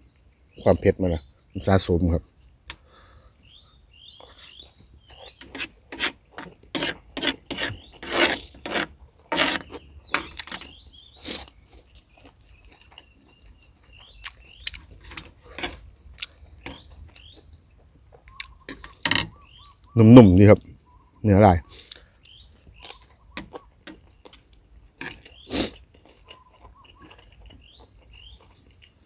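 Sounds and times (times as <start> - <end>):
insect trill: 0.0 - 29.0
rasping chewing: 4.2 - 19.0, 21.7 - 29.0.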